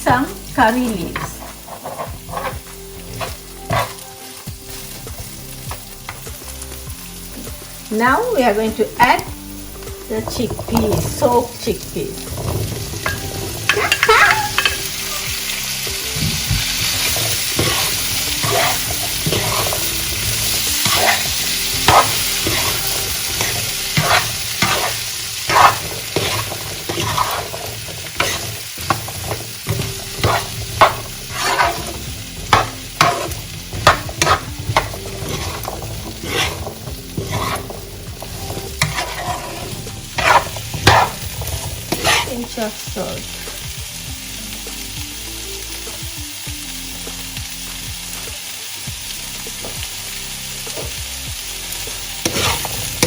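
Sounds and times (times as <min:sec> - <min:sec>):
chickpeas sizzling in hot oil: 0:00.0 - 0:53.0
spoon clinking and scraping pan: 0:01.0 - 0:04.0, 0:12.2 - 0:15.3, 0:16.4 - 0:42.7, 0:52.2 - 0:53.0.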